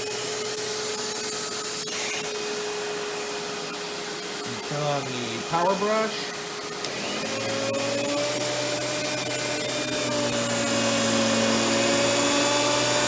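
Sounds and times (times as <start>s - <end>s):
vacuum cleaner power brush whine: 0.0s - 13.0s.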